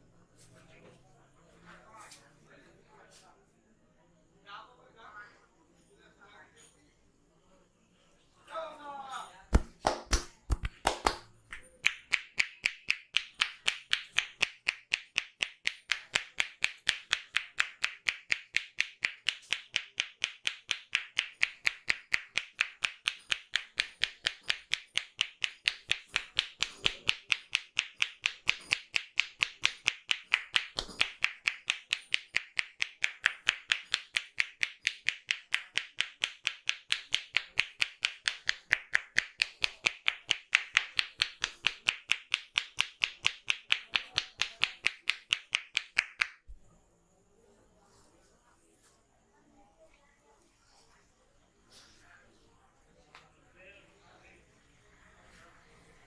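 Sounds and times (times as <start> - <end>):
hands slapping a head: 9.5 - 46.6.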